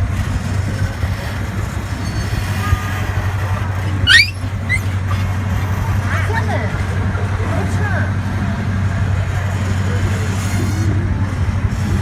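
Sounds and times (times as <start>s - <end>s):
small train humming: 0.0s - 12.0s
faint short squeaks: 1.9s - 2.9s, 4.0s - 5.2s
loud high squeal: 4.0s - 5.0s.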